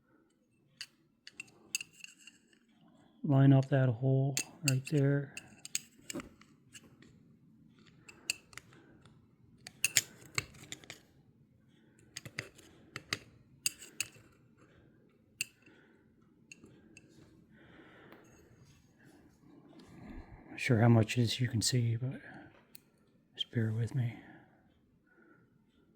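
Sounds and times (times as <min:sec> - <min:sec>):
small metal parts clicking: 0:00.7 - 0:02.7, 0:04.4 - 0:07.1, 0:07.8 - 0:08.8, 0:09.6 - 0:11.1, 0:12.0 - 0:14.4, 0:16.5 - 0:17.1.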